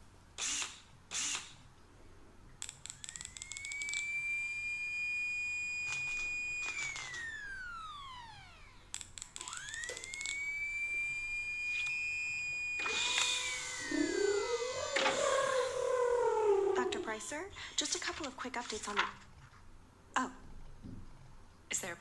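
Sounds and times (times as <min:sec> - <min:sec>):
electric power tool whining: 0:09.4 - 0:15.8.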